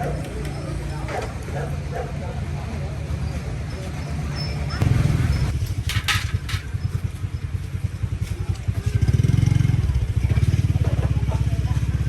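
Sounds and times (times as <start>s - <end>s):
engine running and revving: 4.7s - 5.7s, 6.6s - 12.0s.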